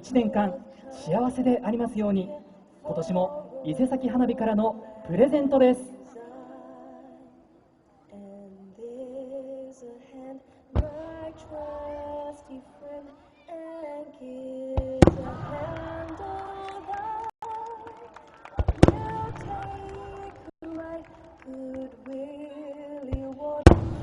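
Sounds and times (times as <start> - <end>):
woman singing over loudspeakers: 0.0 - 7.5, 8.1 - 24.0
fireworks bursting with bangs: 14.8 - 17.1, 18.6 - 20.5, 23.1 - 24.0.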